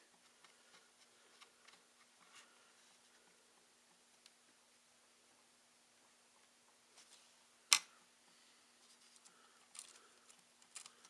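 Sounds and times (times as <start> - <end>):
faint clicks and rustles: 8.8 - 11.0.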